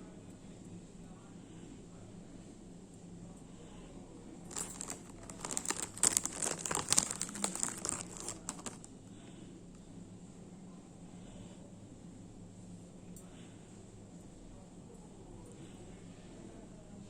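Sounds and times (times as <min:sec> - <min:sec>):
packaging crinkling and rustling: 0:04.5 - 0:08.9.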